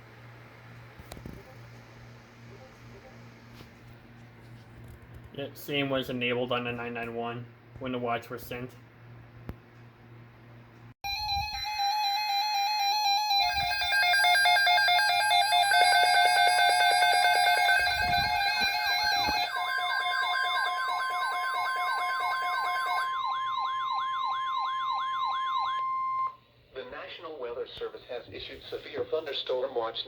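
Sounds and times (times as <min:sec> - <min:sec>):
steady high tone: 0:11.0 - 0:26.4
electronic siren-like alert tones: 0:11.1 - 0:26.4.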